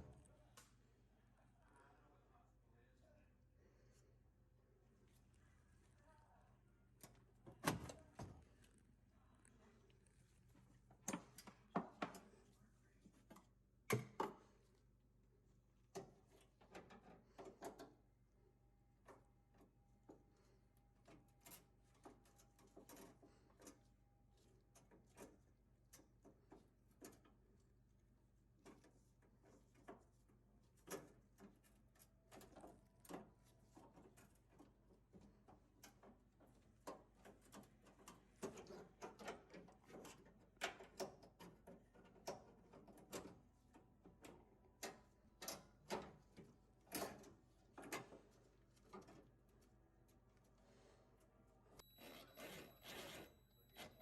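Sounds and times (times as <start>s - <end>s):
faint handling clicks and knocks: 7.0s - 14.9s, 19.0s - 27.9s, 28.6s - 50.8s
faint steady tone: 51.4s - 54.0s.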